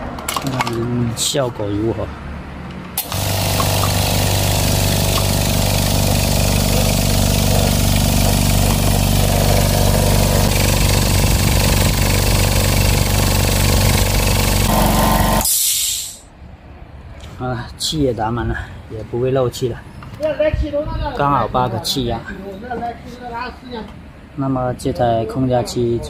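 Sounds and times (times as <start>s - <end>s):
air compressor running: 3.0s - 16.2s
air hissing: 13.8s - 16.3s.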